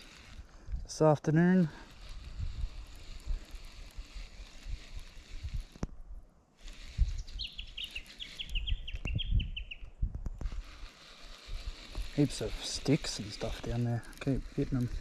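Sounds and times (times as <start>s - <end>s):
wind rumble on microphone: 1.9s - 12.2s
bird chirping: 7.0s - 10.0s.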